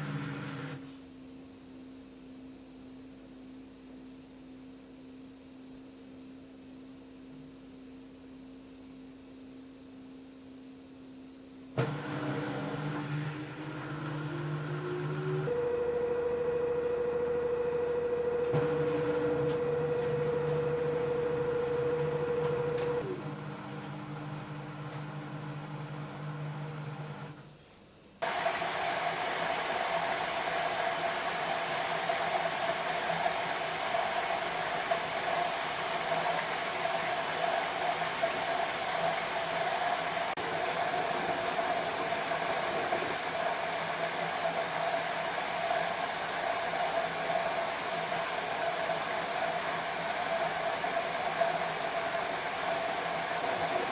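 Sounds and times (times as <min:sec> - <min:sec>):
washing machine water rushing: 0:00.0 - 0:00.8, 0:11.8 - 0:27.4, 0:28.2 - 0:53.9
washing machine motor whine: 0:00.0 - 0:01.0, 0:11.7 - 0:27.5, 0:28.2 - 0:53.9.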